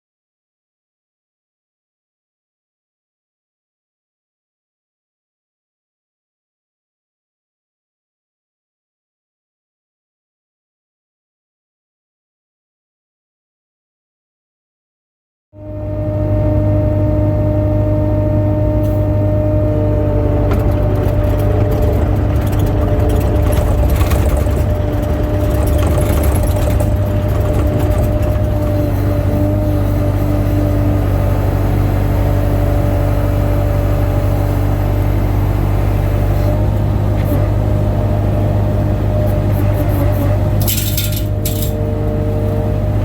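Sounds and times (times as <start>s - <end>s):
diesel engine running under load: 15.6s - 43.0s.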